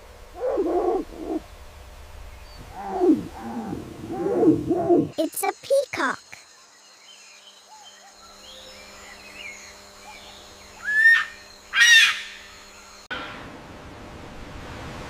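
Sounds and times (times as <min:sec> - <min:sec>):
faint background chirping: 0:00.3 - 0:13.1
peacock calling: 0:10.8 - 0:12.5.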